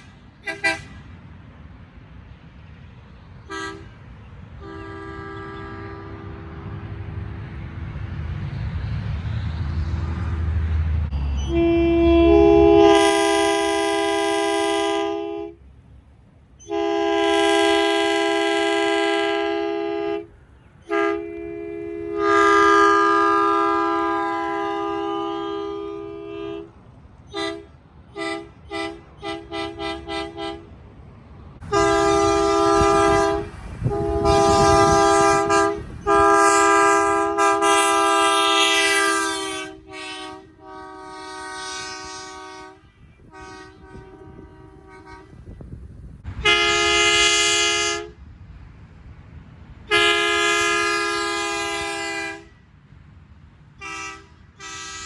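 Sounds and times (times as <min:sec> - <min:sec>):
truck horn two-note chord: 0:11.4 - 0:15.6, 0:31.7 - 0:45.4.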